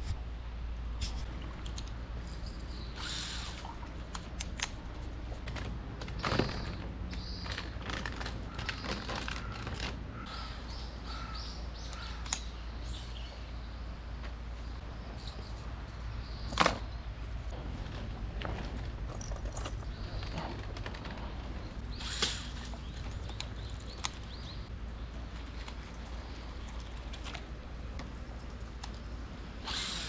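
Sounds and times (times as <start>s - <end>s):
small birds chirping: 6.2s - 14.0s, 14.6s - 17.4s, 19.2s - 27.0s
steady low rumble: 9.4s - 30.0s
sharp clicks: 11.9s - 12.5s.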